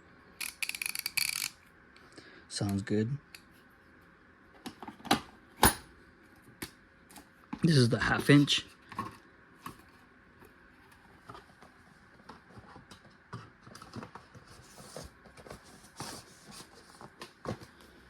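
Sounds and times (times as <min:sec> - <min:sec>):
hand ratchet clicking: 0:00.4 - 0:01.5.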